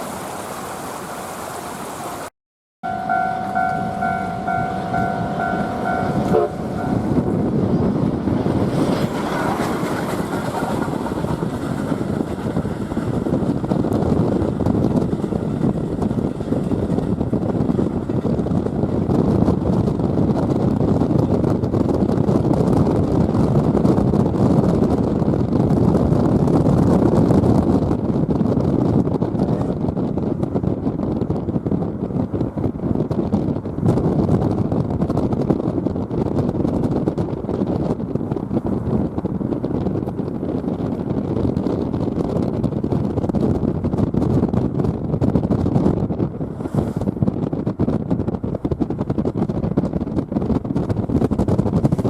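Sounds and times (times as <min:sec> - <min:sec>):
vehicle road noise: 0:00.0 - 0:19.0, 0:31.5 - 0:47.4
wind on microphone: 0:00.0 - 0:52.0
steam train running: 0:02.9 - 0:17.2.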